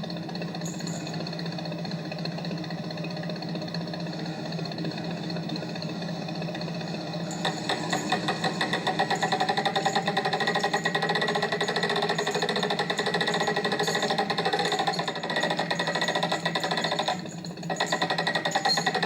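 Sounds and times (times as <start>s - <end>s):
small engine humming: 0.0s - 19.0s
fast even rattling: 7.3s - 19.0s.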